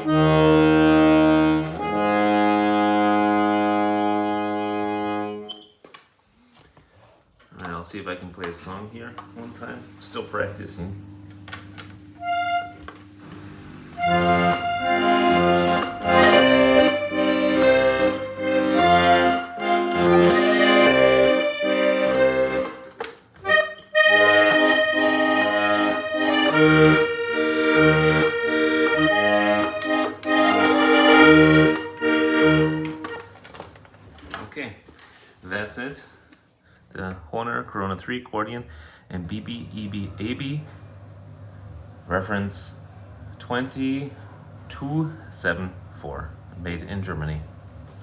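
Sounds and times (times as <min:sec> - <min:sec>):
button accordion playing a tune: 0:00.0 - 0:05.6, 0:12.2 - 0:33.5.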